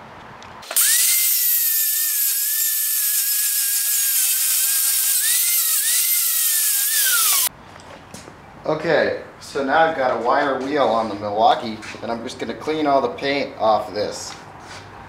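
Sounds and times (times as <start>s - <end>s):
angle grinder cutting steel: 0.6s - 7.5s.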